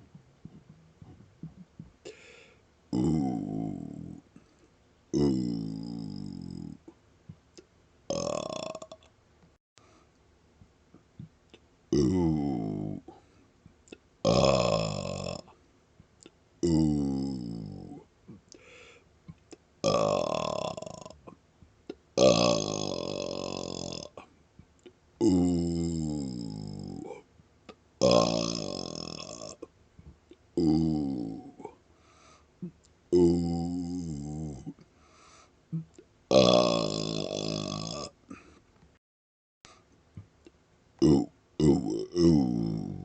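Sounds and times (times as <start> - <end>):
man burping: 2.9 - 4.2, 5.2 - 6.9, 8.1 - 9.0, 11.9 - 13.2, 14.2 - 15.5, 16.6 - 18.1, 19.8 - 21.4, 22.2 - 24.3, 25.2 - 27.2, 28.0 - 29.7, 30.6 - 31.8, 32.6 - 34.8, 35.8 - 38.5, 41.0 - 43.0.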